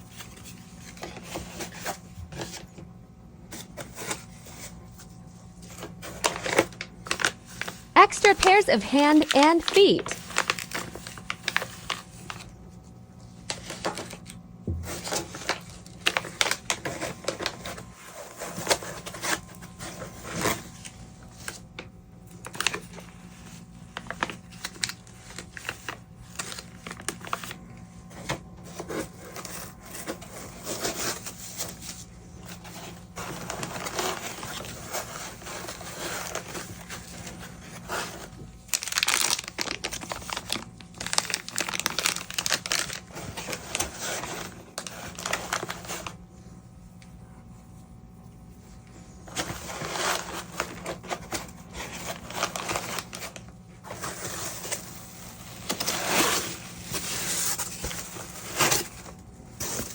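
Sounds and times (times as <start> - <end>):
plastic packaging crinkling: 9.1 - 12.5, 13.4 - 19.4, 22.4 - 27.6, 33.2 - 46.2, 49.4 - 59.9.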